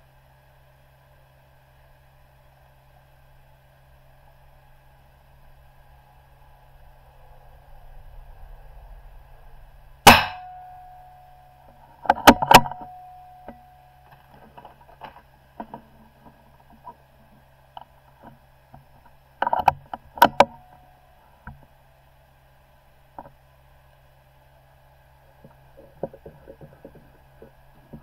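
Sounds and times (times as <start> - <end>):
rifle shot with echo: 10.1 - 10.7.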